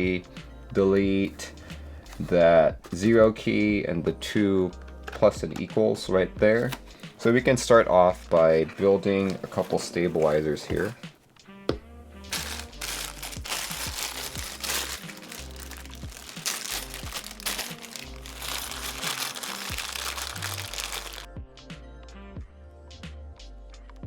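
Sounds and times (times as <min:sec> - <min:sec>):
background music with bass line: 0:00.0 - 0:24.0
plastic packaging crinkling: 0:12.3 - 0:21.3.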